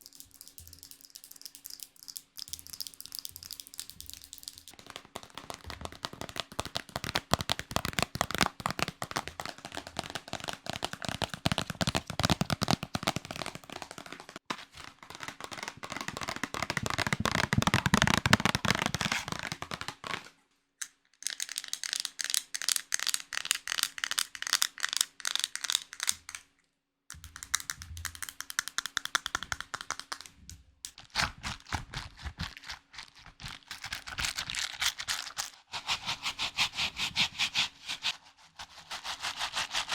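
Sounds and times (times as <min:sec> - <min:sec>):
rapid crackling and tapping clicks: 0:00.0 - 0:20.3.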